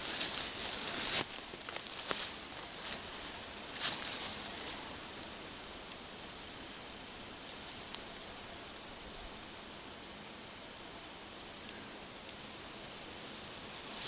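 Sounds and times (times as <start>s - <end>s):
crackling rustle: 0.0s - 9.5s, 11.6s - 14.0s
steady outdoor hiss: 0.0s - 14.0s.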